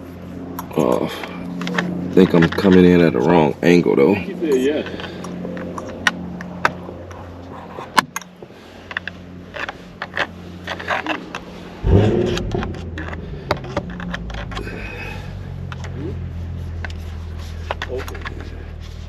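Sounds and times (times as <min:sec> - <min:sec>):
steady low hum: 0:00.0 - 0:19.0
heavy low thump: 0:11.8 - 0:15.2.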